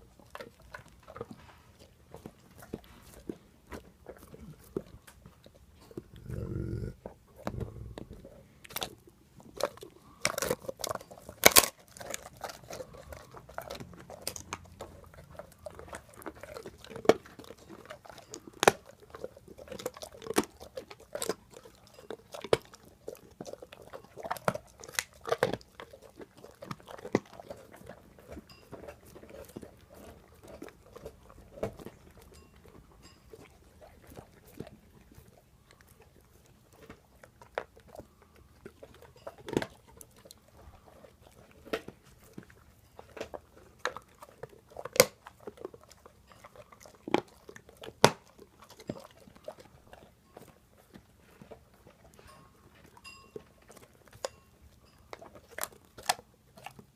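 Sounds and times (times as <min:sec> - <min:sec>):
dog chewing a bone: 0:00.0 - 0:56.9
bone cracking and crunching: 0:06.0 - 0:28.1, 0:36.6 - 0:50.1, 0:55.2 - 0:56.9.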